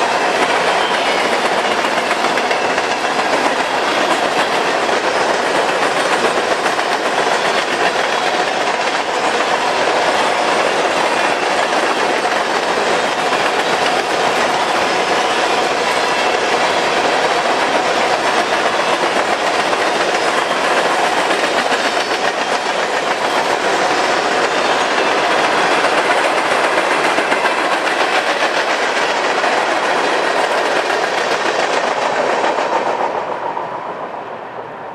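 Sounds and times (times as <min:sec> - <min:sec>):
train wheels clickety-clack: 0:00.0 - 0:34.7.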